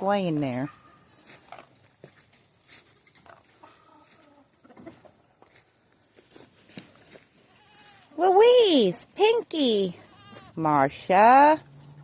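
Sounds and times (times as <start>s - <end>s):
hens clucking softly: 3.2s - 5.3s
faint hen call: 3.6s - 4.8s.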